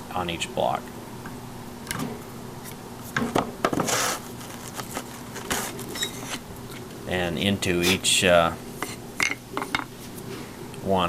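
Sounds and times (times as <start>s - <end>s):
short scrape on workbench: 3.8s - 4.4s.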